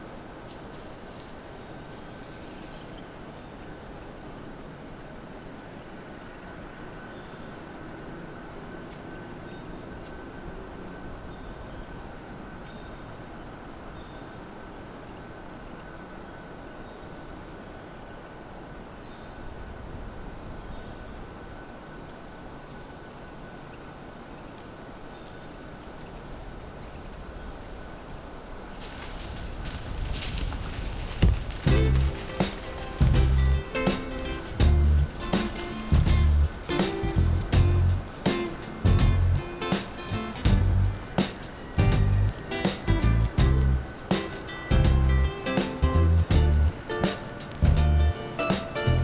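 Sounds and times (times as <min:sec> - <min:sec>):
steady low rumble: 0:31.4 - 0:32.3, 0:33.0 - 0:33.7, 0:34.5 - 0:35.3, 0:35.9 - 0:38.2, 0:38.8 - 0:39.4, 0:40.1 - 0:41.1, 0:41.8 - 0:43.9, 0:44.7 - 0:46.8, 0:47.6 - 0:48.2.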